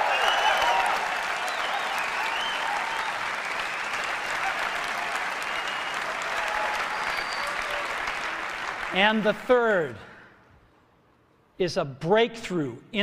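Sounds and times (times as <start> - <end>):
crowd cheering: 0.0 - 9.7
audience applauding: 0.0 - 10.0.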